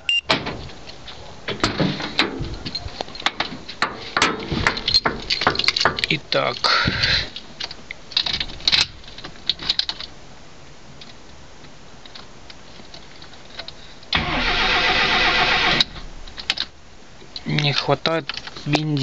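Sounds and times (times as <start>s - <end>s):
car starter cranking engine: 14.2s - 16.7s.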